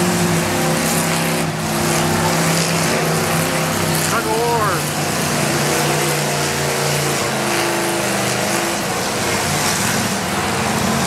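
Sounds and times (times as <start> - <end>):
car engines revving: 0.0 - 11.0
arena noise: 0.1 - 6.6.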